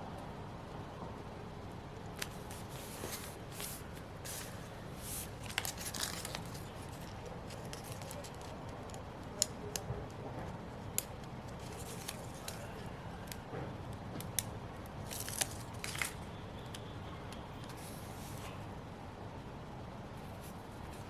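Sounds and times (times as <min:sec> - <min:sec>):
steady hiss: 0:02.2 - 0:07.6
paper tearing and rustling: 0:02.2 - 0:08.5, 0:11.6 - 0:12.7, 0:15.0 - 0:16.2.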